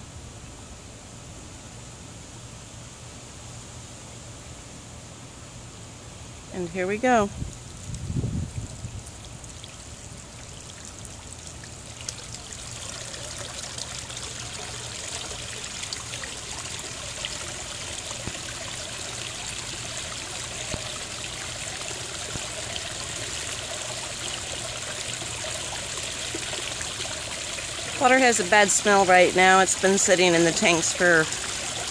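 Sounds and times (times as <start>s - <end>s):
pond waterfall splashing: 8.6s - 31.9s.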